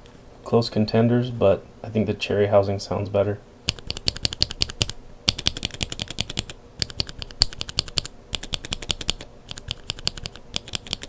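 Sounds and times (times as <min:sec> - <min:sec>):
mechanical keyboard typing: 0:03.7 - 0:11.0.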